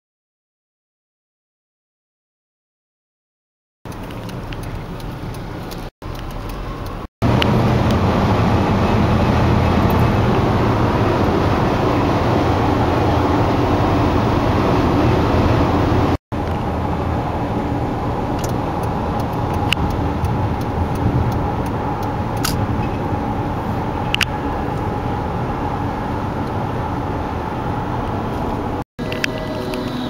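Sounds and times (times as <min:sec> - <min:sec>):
sharp ticks: 0:03.9 - 0:08.0, 0:18.4 - 0:22.6
riding lawn mower engines running: 0:03.9 - 0:30.0.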